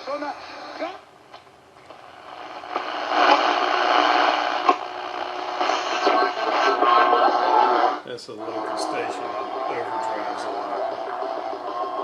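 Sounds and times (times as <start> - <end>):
radio clicks: 1.3 - 6.8
garbled radio signal: 2.3 - 12.0.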